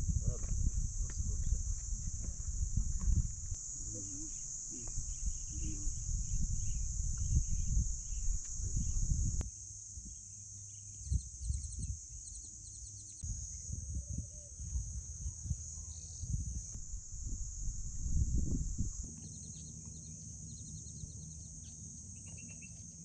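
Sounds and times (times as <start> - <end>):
low rumbling noise: 0.0 - 9.4, 16.4 - 21.4
high-pitched insect drone: 0.0 - 23.0
bird chirps: 19.1 - 22.9.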